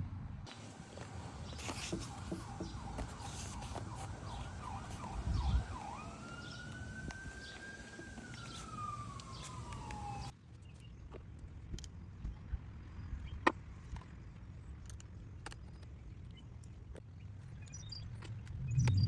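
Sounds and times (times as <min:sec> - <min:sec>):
siren yelping and wailing: 0:00.8 - 0:10.3
steady low rumble: 0:18.4 - 0:19.0.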